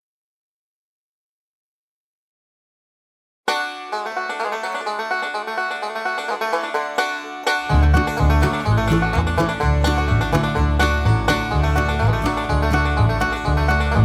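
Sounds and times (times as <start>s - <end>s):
up-tempo banjo tune: 3.5s - 14.0s
bass line: 7.7s - 14.0s.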